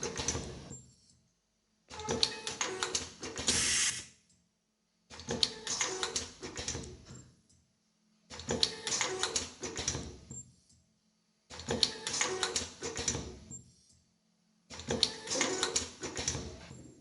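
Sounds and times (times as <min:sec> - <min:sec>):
machine clicking and clattering: 0:00.0 - 0:00.7.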